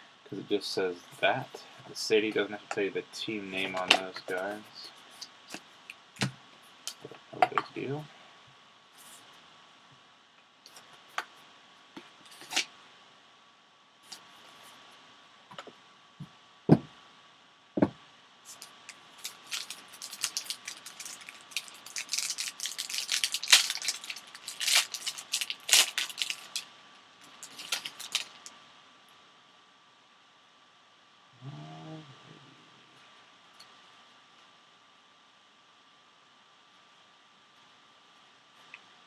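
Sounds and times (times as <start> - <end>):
plastic wrapping crinkling: 18.5 - 28.5.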